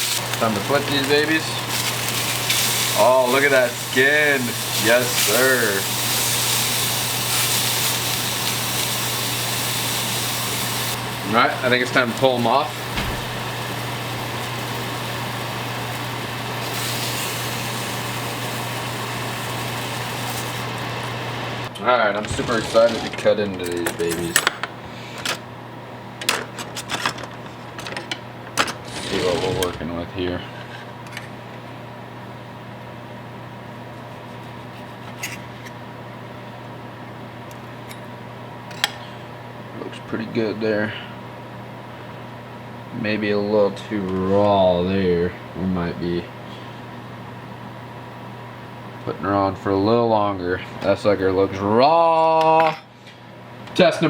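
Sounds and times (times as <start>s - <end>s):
meat sizzling in a pan: 0.0s - 21.7s
low mechanical hum: 0.0s - 54.0s.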